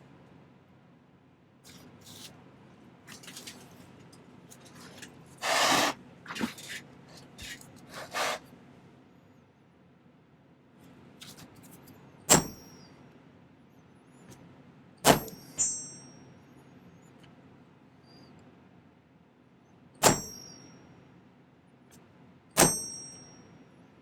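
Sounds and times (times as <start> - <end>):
rustling scrape: 1.7 - 2.4, 4.5 - 8.5
hammer striking metal stamp: 12.3 - 12.7, 15.0 - 16.0, 20.0 - 20.5, 22.6 - 23.3
knocks and handling of metal: 15.1 - 16.0.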